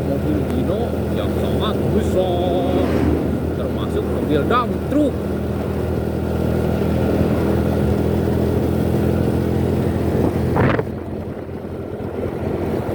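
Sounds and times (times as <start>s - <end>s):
motorcycle engine drone: 0.0s - 12.9s
traffic road noise: 0.0s - 12.9s
short rush of noise: 2.3s - 4.3s.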